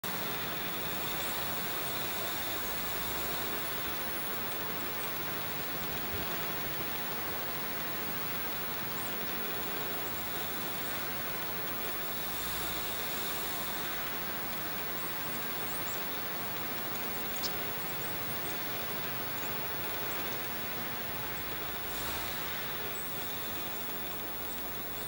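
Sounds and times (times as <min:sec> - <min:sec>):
songbirds chirping: 0:00.0 - 0:25.0
steady rushing noise: 0:19.6 - 0:25.0.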